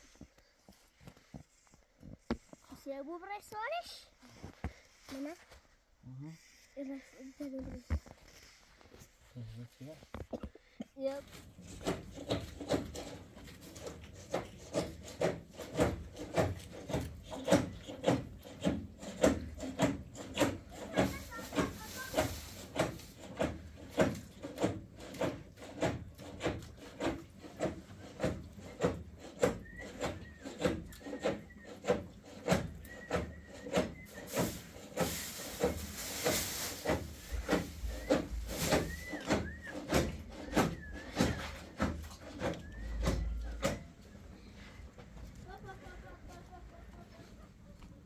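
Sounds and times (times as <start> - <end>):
rhythmic scraping strokes: 11.5 - 43.9.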